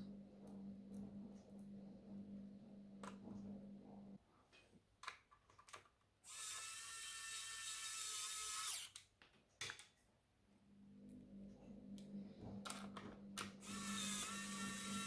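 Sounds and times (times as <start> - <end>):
electric screwdriver whirring: 6.3 - 9.0, 13.6 - 15.0.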